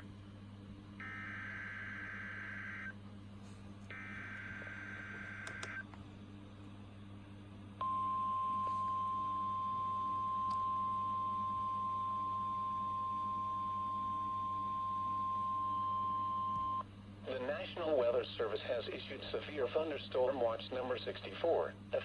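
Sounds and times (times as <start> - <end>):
steady single-pitch alert tone: 1.0 - 3.0.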